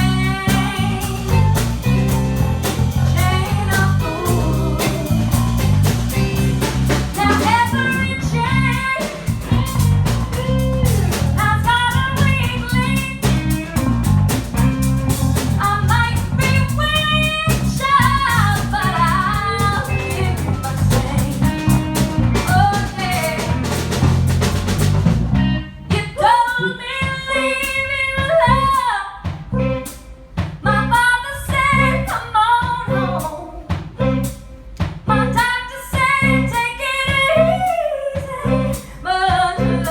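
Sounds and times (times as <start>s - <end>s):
person singing: 0.0s - 13.8s, 15.6s - 23.7s, 35.1s - 39.9s
live band playing: 0.0s - 39.9s.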